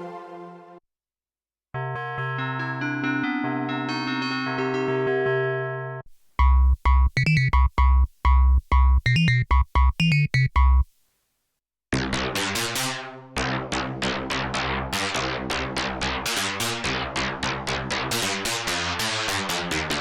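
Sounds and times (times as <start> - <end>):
bright plucked synth notes: 6.4 - 10.9
punchy staccato synth bass notes: 6.4 - 10.9.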